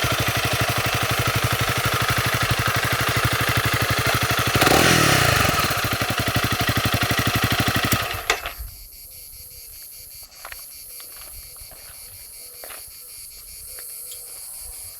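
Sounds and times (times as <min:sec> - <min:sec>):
faint engine clicks: 0:00.0 - 0:08.6
motorcycle engine idling: 0:00.0 - 0:08.6.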